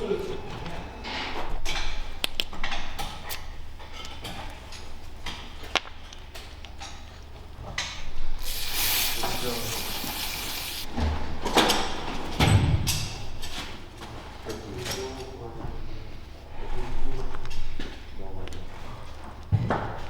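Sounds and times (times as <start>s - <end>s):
steady high hiss: 8.4s - 10.9s.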